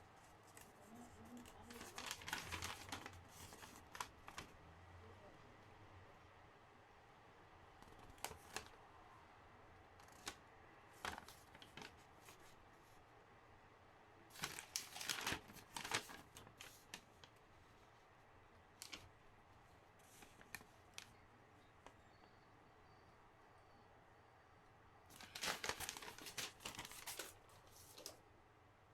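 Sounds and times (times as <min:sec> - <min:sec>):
packaging clicks and crinkles: 0:00.5 - 0:04.5, 0:07.8 - 0:08.8, 0:11.0 - 0:12.5, 0:14.3 - 0:17.4, 0:18.8 - 0:19.1, 0:25.1 - 0:28.2
packaging rustling and tearing: 0:00.5 - 0:04.5, 0:14.4 - 0:17.1, 0:25.1 - 0:28.2.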